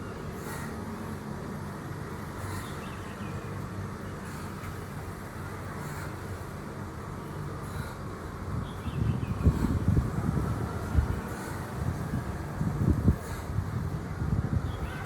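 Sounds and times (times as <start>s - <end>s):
wind buffeting microphone: 8.0s - 15.0s.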